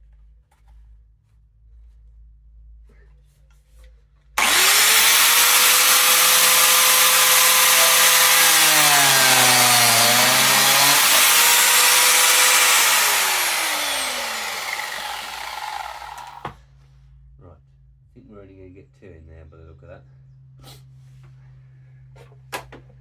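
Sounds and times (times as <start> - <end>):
blade cutting into wood: 4.4 - 16.5
biscuit jointer motor: 4.4 - 16.6.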